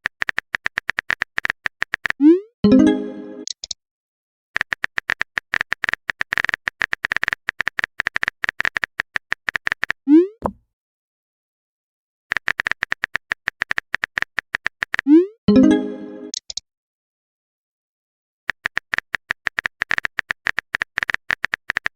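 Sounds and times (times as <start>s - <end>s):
phone keyboard typing clicks: 0.0s - 2.2s, 4.6s - 10.6s, 12.3s - 15.1s, 18.5s - 21.9s.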